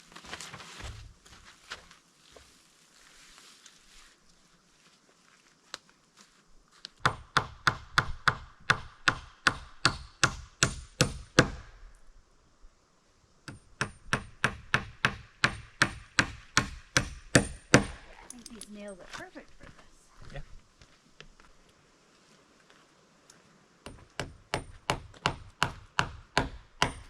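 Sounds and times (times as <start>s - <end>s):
hammer driving nails into wood: 13.5s - 18.0s, 23.9s - 27.0s.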